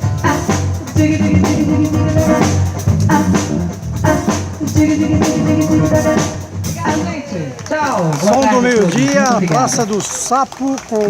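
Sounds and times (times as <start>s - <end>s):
instrumental drum and guitar music: 0.0s - 8.4s.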